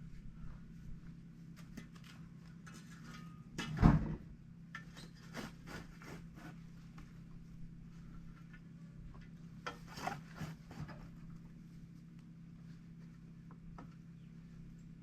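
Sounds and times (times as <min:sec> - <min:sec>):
coals being raked and scraped: 0:05.0 - 0:06.8.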